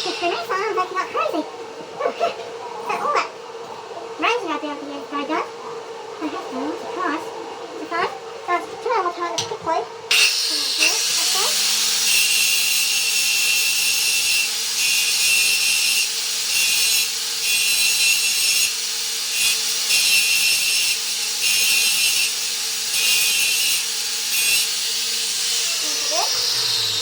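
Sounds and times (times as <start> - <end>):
power tool rasping against steel: 10.1 - 27.0.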